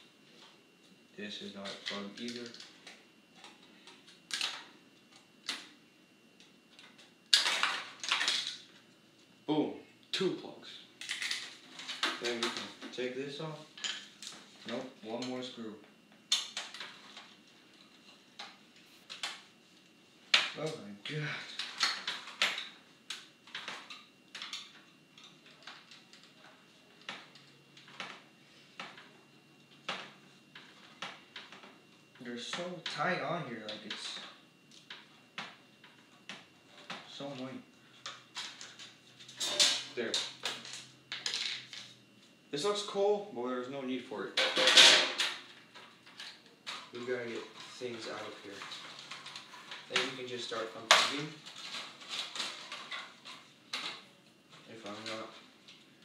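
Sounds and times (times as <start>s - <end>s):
wires snapping and clicking: 1.6s - 5.7s, 6.4s - 8.7s.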